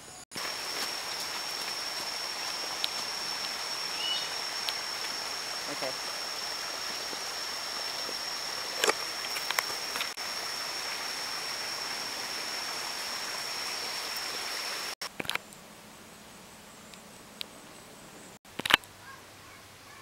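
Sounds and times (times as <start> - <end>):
rushing hiss: 0.3 - 15.0.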